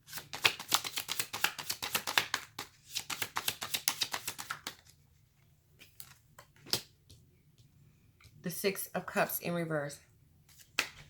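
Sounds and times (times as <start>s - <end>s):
cards being shuffled: 0.1s - 5.0s, 5.8s - 7.2s, 10.5s - 11.0s.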